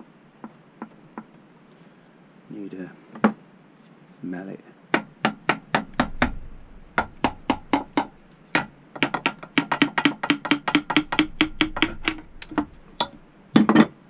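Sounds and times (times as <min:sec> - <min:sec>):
mallet striking metal gearbox: 0:05.8 - 0:13.9.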